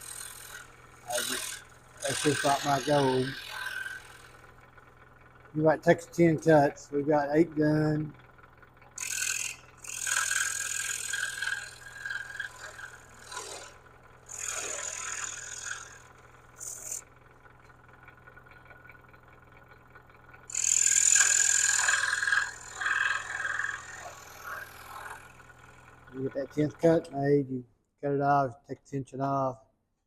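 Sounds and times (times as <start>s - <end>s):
scroll saw cutting wood: 0.0s - 4.6s, 5.6s - 8.2s, 8.9s - 17.8s, 20.5s - 27.2s
steady low hum: 0.0s - 27.6s.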